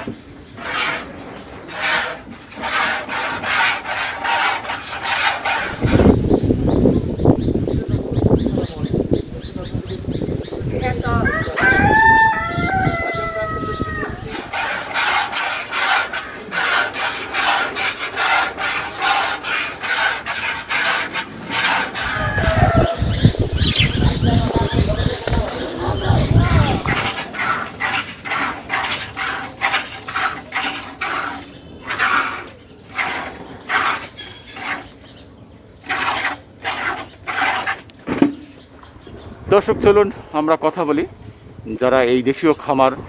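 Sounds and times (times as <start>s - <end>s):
milk squirting into a pail: 1.7s - 6.1s, 14.2s - 22.7s, 26.4s - 34.9s, 35.8s - 38.2s.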